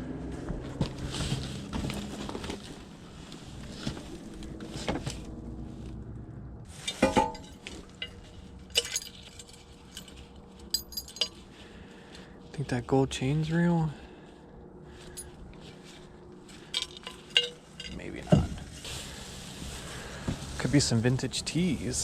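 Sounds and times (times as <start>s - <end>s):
metal and glass items clinking: 6.7s - 11.4s, 16.5s - 18.6s.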